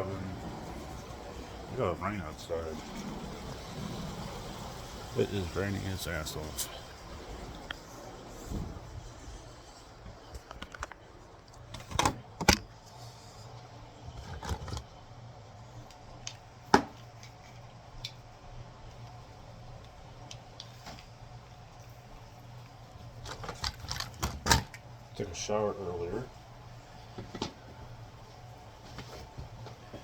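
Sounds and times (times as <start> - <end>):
faint hiss: 1.3 - 10.0.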